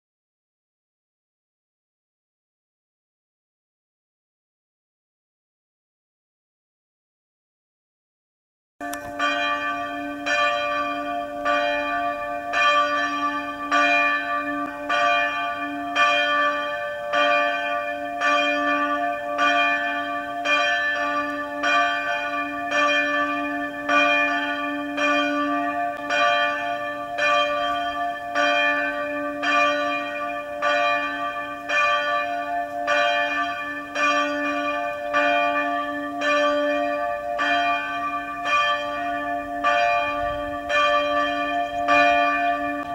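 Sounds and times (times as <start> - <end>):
church bells ringing: 8.8 - 42.9.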